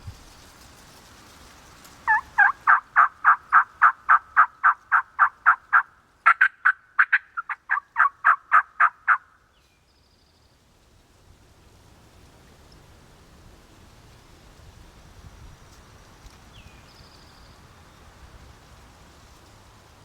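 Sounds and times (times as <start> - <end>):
turkey yelps: 2.1 - 9.4.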